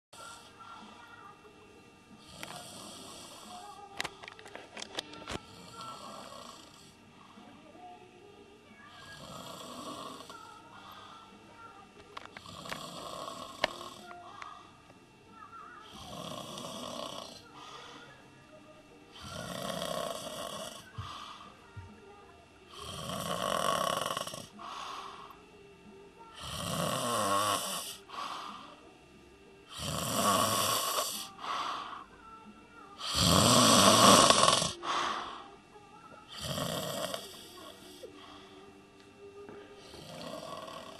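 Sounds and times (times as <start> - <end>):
person snoring heavily: 2.2 - 3.5, 5.5 - 7.0, 9.0 - 10.4, 12.4 - 14.1, 15.8 - 18.0, 19.1 - 21.4, 22.7 - 25.4, 26.4 - 28.7, 29.7 - 32.0, 33.0 - 35.5, 36.3 - 38.4, 39.8 - 40.9
quiet breath: 5.3 - 7.7, 10.2 - 11.6, 17.3 - 18.6, 20.6 - 21.7, 24.5 - 25.5, 27.7 - 29.0, 30.9 - 32.2, 34.7 - 35.7, 37.1 - 40.3.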